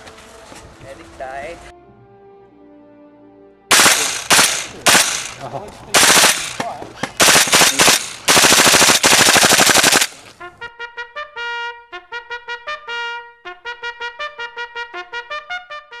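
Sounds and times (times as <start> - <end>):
airsoft gun full-auto burst: 3.7 - 10.3
brass tune staccato notes: 6.0 - 16.0.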